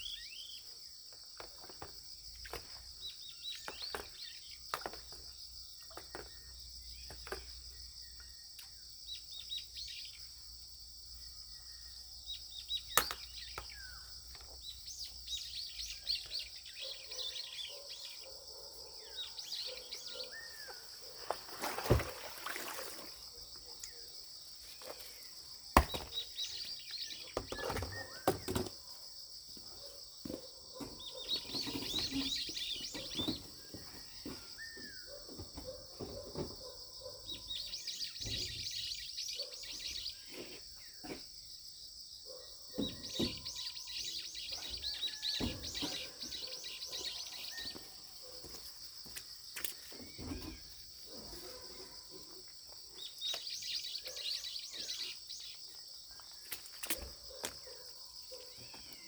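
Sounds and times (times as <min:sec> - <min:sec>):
birds chirping: 0:00.0 - 0:10.5, 0:11.1 - 0:21.4, 0:22.5 - 0:41.2, 0:42.3 - 0:59.0.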